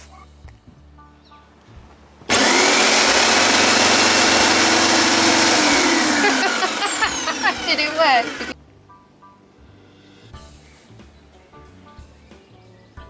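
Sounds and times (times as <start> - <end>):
jigsaw motor whining: 2.3 - 8.6.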